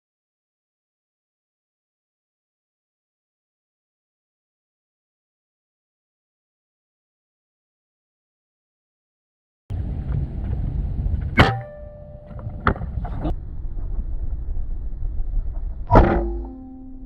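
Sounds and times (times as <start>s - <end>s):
boat low rumble: 9.7s - 17.0s.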